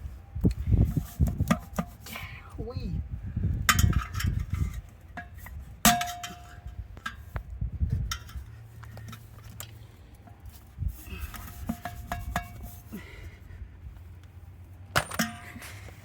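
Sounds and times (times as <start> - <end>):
loud metal clang: 14.9 - 15.6
metal parts clinking: 14.9 - 15.8.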